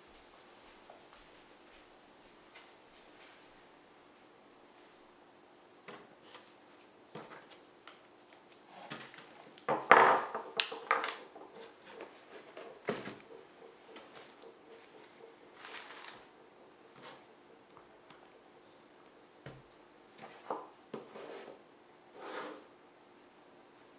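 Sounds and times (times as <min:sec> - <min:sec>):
packaging rustle and clatter: 0:14.2 - 0:16.3.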